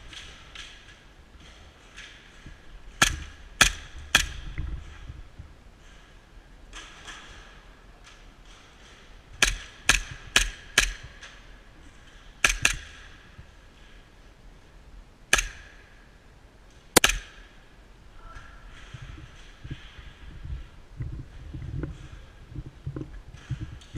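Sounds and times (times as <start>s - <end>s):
airsoft pistol shots: 17.0s - 17.4s.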